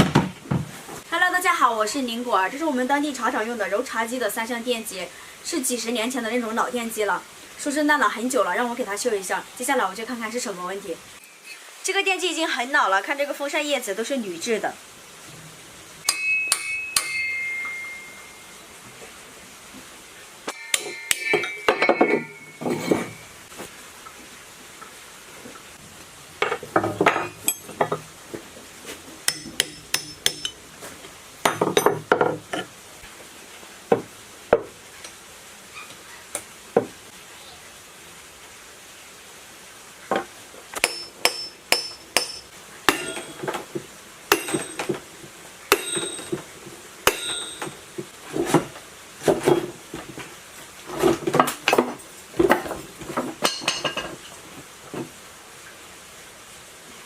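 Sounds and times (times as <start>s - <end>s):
metal tools clanking on motor: 20.5s - 23.3s, 26.4s - 28.0s, 41.4s - 43.5s, 44.3s - 45.0s, 45.7s - 46.4s, 47.1s - 47.8s.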